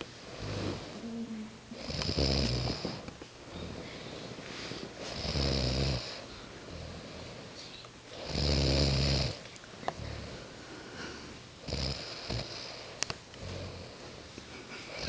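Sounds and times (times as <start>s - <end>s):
people snoring: 0.3s - 1.2s, 1.8s - 4.4s, 5.0s - 7.5s, 8.2s - 9.4s, 10.0s - 14.0s.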